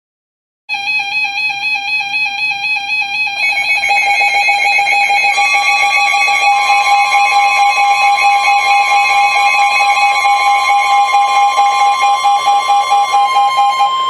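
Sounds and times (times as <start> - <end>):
warbling electronic tone: 1.4 - 14.0
electronic tones in a chord: 3.0 - 14.0.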